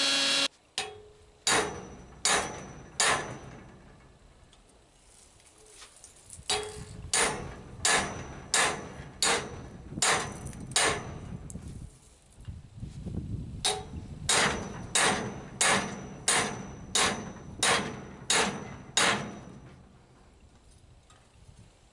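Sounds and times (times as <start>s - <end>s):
hammer striking steel on anvil: 0.8s - 3.9s, 6.5s - 11.3s, 13.6s - 19.8s.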